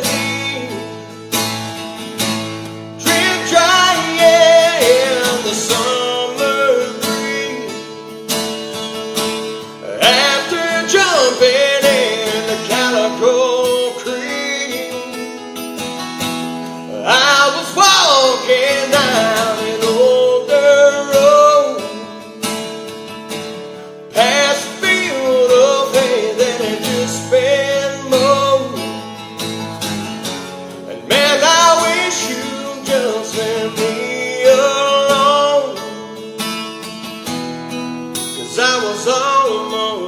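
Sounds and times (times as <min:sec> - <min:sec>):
person singing: 0:00.0 - 0:01.1, 0:03.0 - 0:08.1, 0:09.7 - 0:15.3, 0:16.8 - 0:22.2, 0:24.1 - 0:29.0, 0:30.8 - 0:36.2, 0:38.3 - 0:40.0
acoustic guitar strumming: 0:00.0 - 0:40.0.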